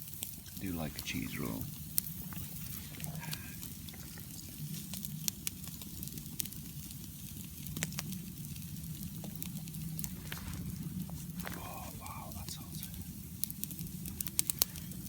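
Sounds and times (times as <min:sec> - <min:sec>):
camp stove low rumble: 0:00.0 - 0:15.0
fat crackling and popping: 0:00.0 - 0:15.0.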